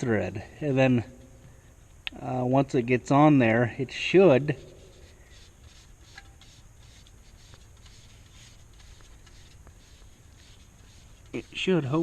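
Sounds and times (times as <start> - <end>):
low steady hum: 0.0 - 12.0
nozzle rubbing and clicking: 4.7 - 12.0.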